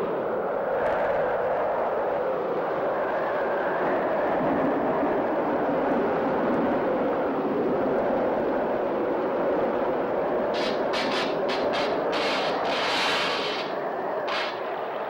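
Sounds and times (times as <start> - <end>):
storm wind rushing: 0.2 - 15.0
sharp crack: 10.6 - 14.9.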